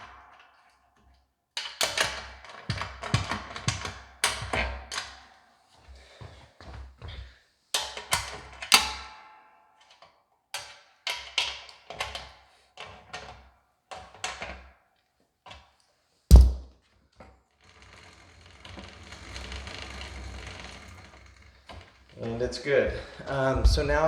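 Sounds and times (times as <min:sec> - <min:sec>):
metallic clanks and taps of bike chain: 0:07.8 - 0:14.7
heavy low thump: 0:16.3 - 0:16.7, 0:22.9 - 0:24.0.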